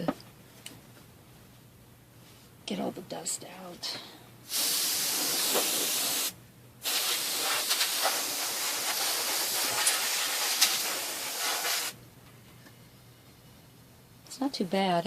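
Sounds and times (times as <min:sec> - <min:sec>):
compressed air hissing blast: 0:04.5 - 0:12.0.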